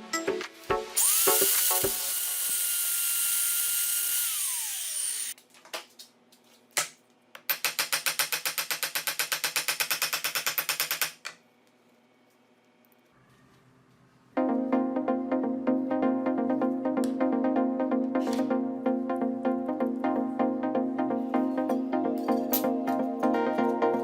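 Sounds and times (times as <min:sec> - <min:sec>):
angle grinder motor whining: 0:01.0 - 0:05.4.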